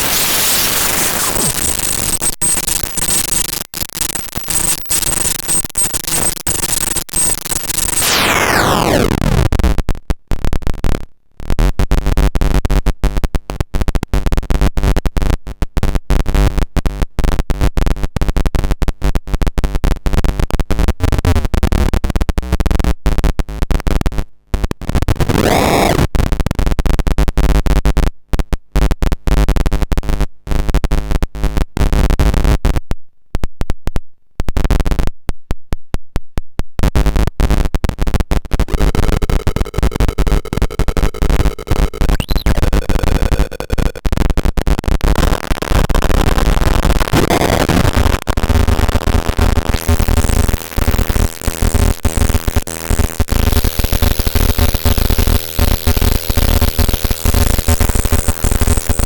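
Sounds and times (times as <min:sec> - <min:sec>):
harsh stuttering synth buzzing: 0:00.0 - 0:09.5, 0:25.1 - 0:26.1, 0:38.5 - 0:59.0.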